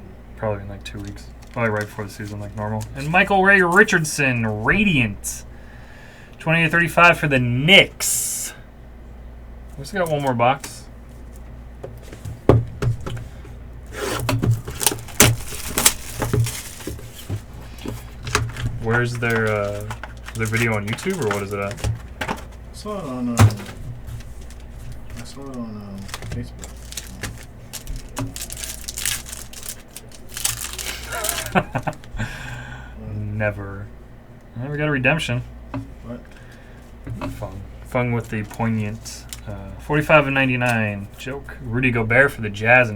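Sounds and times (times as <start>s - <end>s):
plastic wrapping crinkling: 1.0s - 3.2s, 14.0s - 32.2s
taps and knocks on cardboard box: 11.8s - 13.3s.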